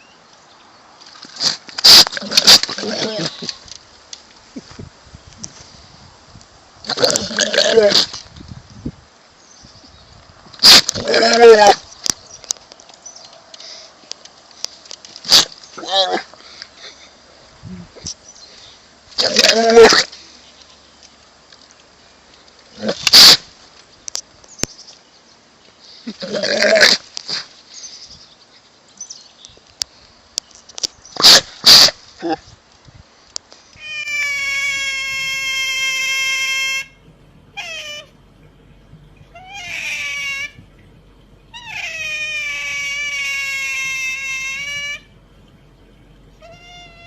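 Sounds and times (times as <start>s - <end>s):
cat yowling: 33.8s - 38.1s, 39.3s - 40.6s, 41.5s - 45.1s, 46.4s - 47.0s.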